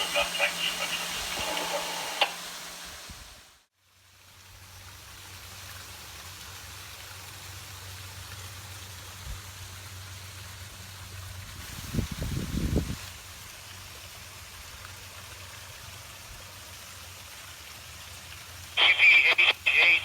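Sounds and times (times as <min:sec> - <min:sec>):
steady hissing noise: 0:00.0 - 0:04.1, 0:18.8 - 0:20.0.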